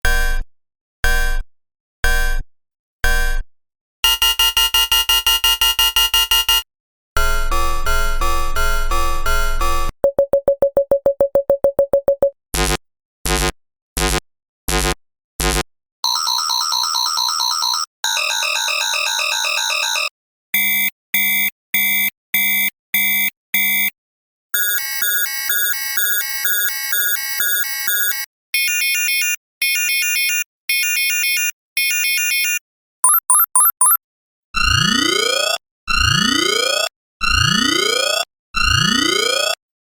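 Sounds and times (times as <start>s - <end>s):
two-tone electronic alarm: 30.0s - 34.0s
fast-warbling electronic alarm: 33.0s - 34.0s
quick rising bleeps: 33.0s - 34.0s
rapid electronic beeping: 33.0s - 34.0s.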